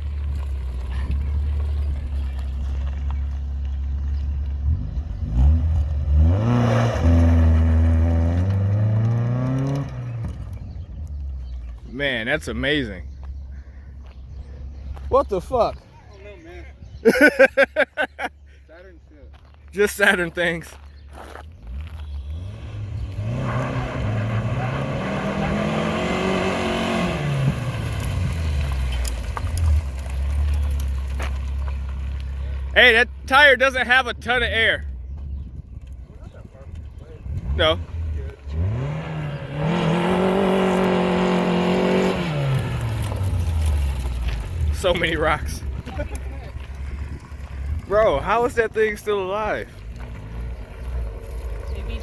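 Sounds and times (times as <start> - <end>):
car engine revving: 0.0 - 11.8, 21.6 - 35.2, 36.6 - 52.0.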